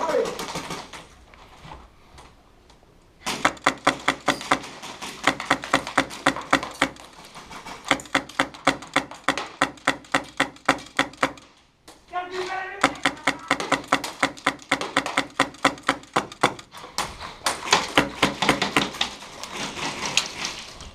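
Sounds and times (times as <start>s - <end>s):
airsoft guns firing: 3.2s - 11.6s, 12.3s - 16.8s, 17.5s - 19.2s.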